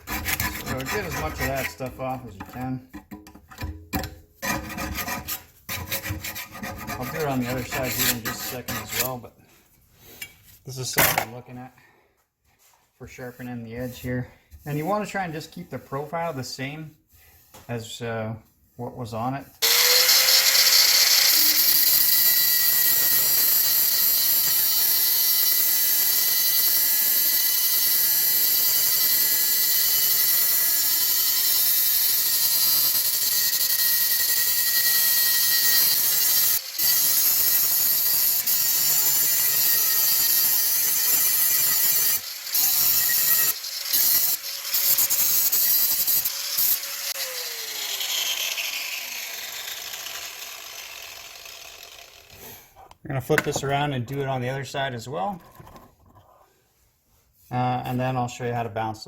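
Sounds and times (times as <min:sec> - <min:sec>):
grinder sharpening metal blade: 0:00.0 - 0:01.8, 0:04.4 - 0:09.2, 0:19.7 - 0:49.4
grinder motor spinning down: 0:19.6 - 0:27.5, 0:46.0 - 0:52.3.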